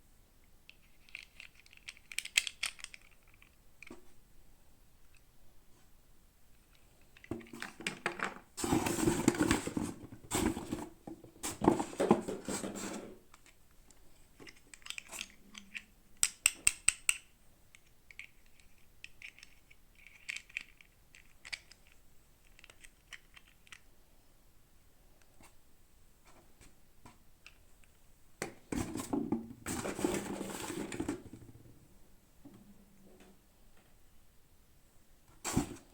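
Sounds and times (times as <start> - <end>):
sharp plastic clicks: 14.7 - 23.8.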